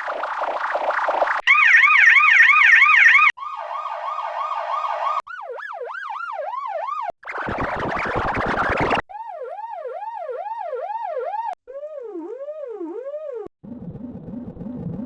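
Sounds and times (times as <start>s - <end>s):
police siren: 0.0s - 11.6s.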